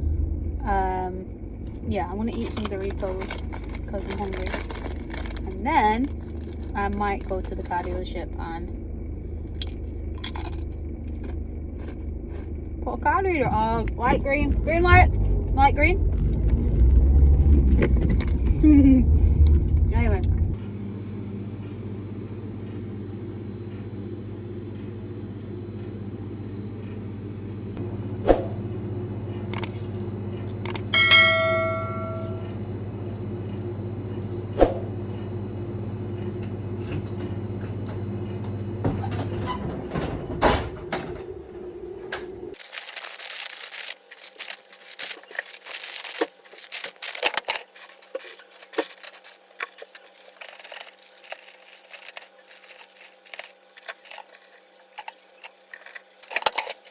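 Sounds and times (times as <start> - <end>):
car engine hum: 0.0 - 56.9
rustling: 2.3 - 8.0, 42.5 - 56.9
ringing ding: 30.9 - 32.6.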